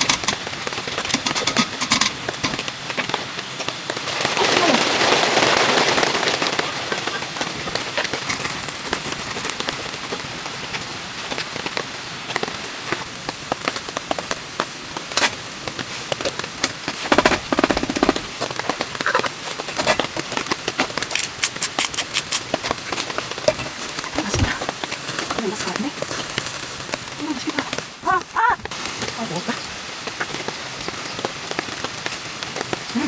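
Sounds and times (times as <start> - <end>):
oil popping and spitting: 21.0 - 22.6.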